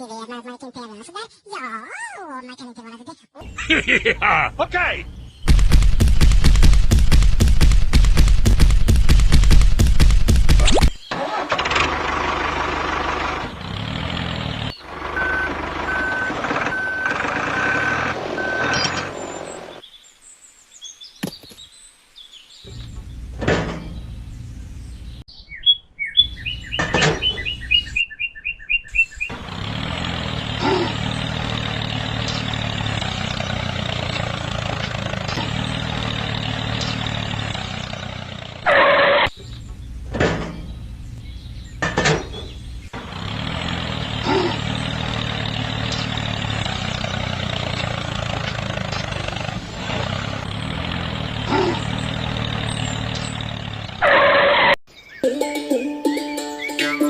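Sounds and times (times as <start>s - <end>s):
regular beeping tone: 15.1s - 19.2s.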